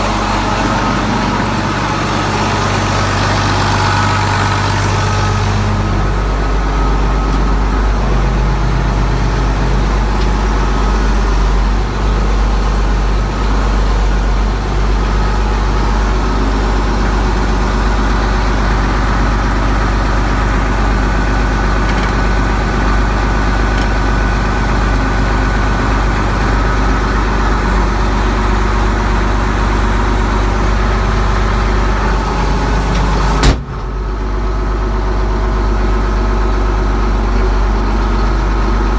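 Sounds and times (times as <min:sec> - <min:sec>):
tractor diesel engine idling: 0:00.0 - 0:38.9
sharp knock: 0:33.4 - 0:33.9.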